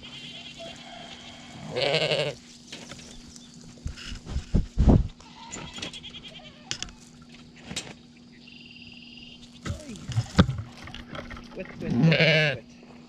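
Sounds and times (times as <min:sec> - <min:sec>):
sheep bleating: 0:00.1 - 0:02.4, 0:11.8 - 0:12.7
knocks and thumps: 0:09.6 - 0:11.6.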